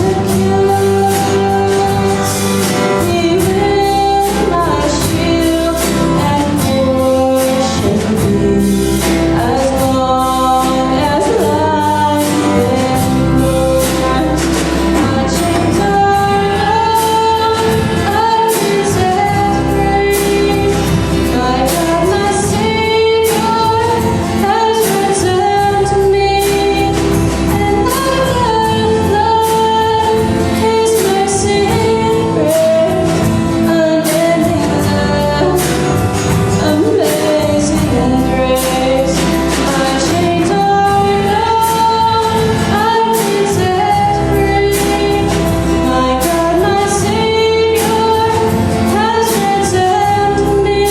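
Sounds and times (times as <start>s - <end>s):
worship song singing with instruments: 0.0s - 50.9s.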